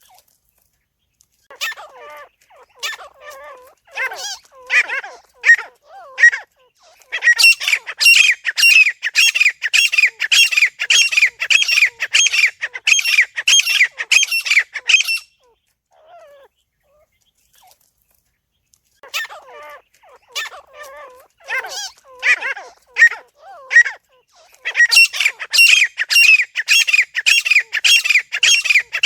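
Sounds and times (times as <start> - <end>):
bird harsh repeated calls: 1.6 - 15.6, 19.1 - 29.0.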